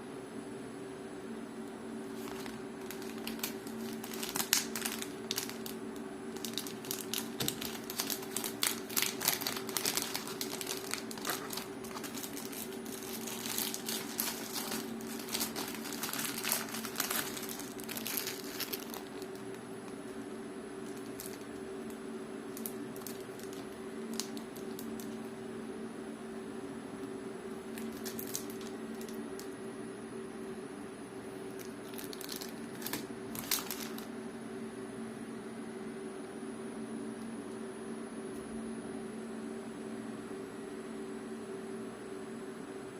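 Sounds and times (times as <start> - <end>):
steady low hum: 0.0 - 42.9
packaging crinkling: 2.1 - 20.2, 20.8 - 25.3, 27.7 - 29.6, 31.5 - 34.1.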